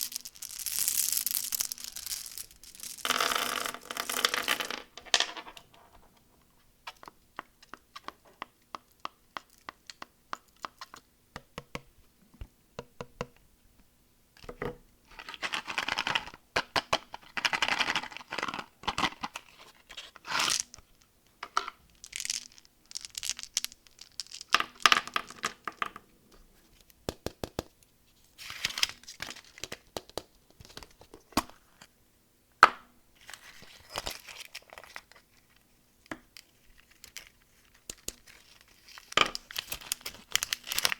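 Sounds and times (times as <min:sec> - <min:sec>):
candy wrappers crinkling and tearing: 0:00.0 - 0:03.0, 0:22.0 - 0:24.8, 0:33.2 - 0:35.6, 0:36.4 - 0:40.9.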